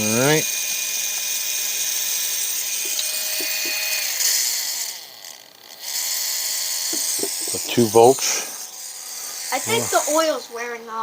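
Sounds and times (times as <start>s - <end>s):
small electric motor whining: 0.0s - 11.0s.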